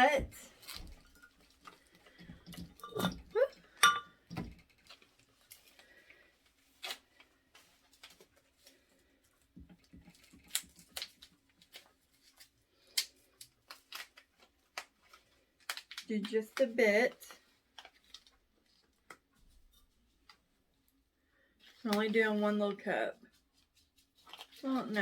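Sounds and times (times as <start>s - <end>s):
teapot clinks and knocks: 2.5s - 4.4s
short ringing clink: 3.8s - 4.1s.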